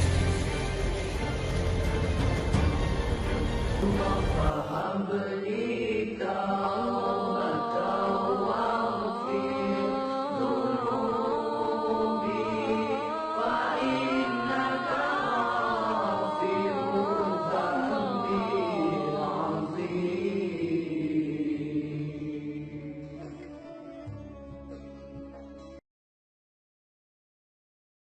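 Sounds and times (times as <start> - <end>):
unaccompanied vocal chanting: 3.7 - 23.7.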